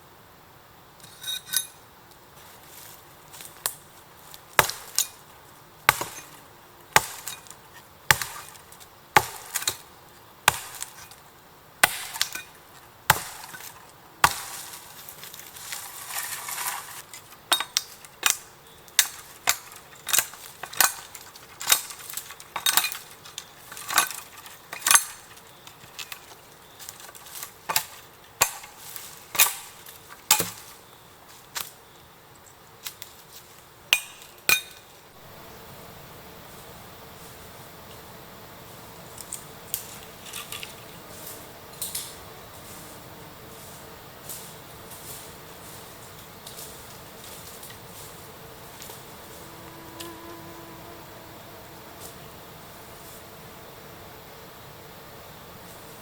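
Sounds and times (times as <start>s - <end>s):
chopping strikes on wood: 4.6s - 5.0s, 5.9s - 6.3s, 7.0s - 7.3s, 8.1s - 8.5s, 9.2s - 9.8s, 10.5s - 10.9s, 11.8s - 12.3s, 13.1s - 13.6s, 14.2s - 14.6s, 27.7s - 28.8s.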